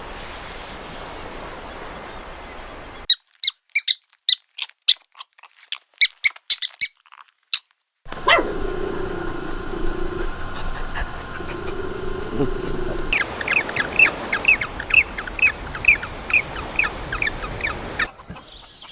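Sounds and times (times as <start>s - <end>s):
high-pitched animal squeaks: 3.1s - 7.0s
low held animal call: 8.1s - 18.1s
steady hiss: 8.1s - 18.1s.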